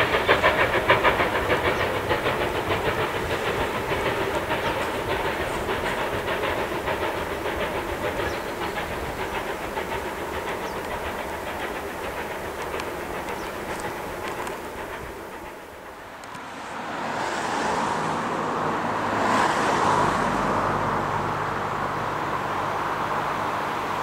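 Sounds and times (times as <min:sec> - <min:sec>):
steam hiss: 0:00.0 - 0:17.9
steam locomotive chuffing: 0:00.0 - 0:24.0.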